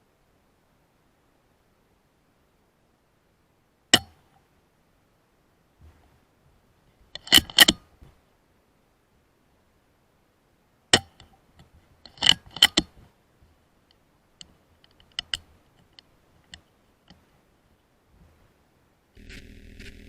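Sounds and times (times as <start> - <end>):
sharp clicks and knocks: 7.2 - 7.8, 11.0 - 13.0, 14.4 - 17.2.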